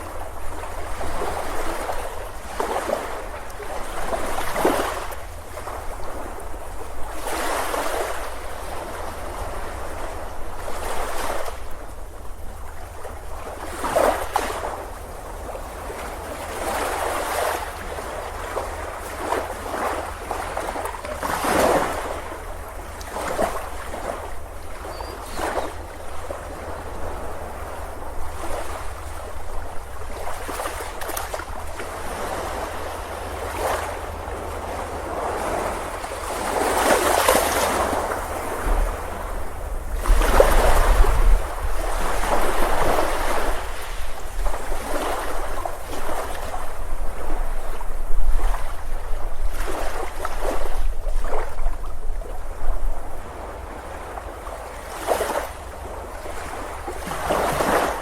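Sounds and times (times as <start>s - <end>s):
ocean waves breaking: 0.0s - 58.0s
steady low surf rumble: 14.5s - 54.9s.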